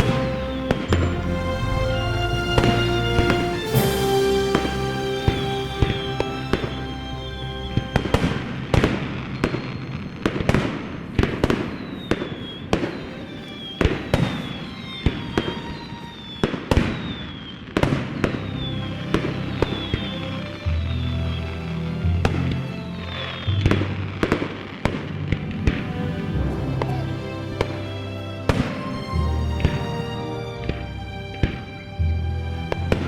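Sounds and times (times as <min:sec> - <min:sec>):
music playing: 0:00.0 - 0:09.4, 0:18.3 - 0:33.0
fireworks banging: 0:02.5 - 0:20.1, 0:23.1 - 0:27.9.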